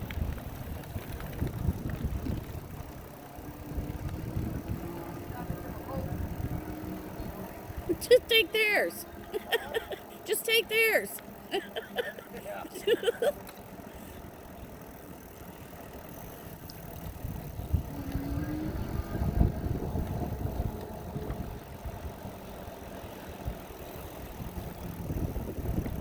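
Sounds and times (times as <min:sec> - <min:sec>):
wind buffeting microphone: 0:00.0 - 0:08.0, 0:17.0 - 0:22.6, 0:23.3 - 0:26.0
tyre and road noise: 0:00.0 - 0:26.0.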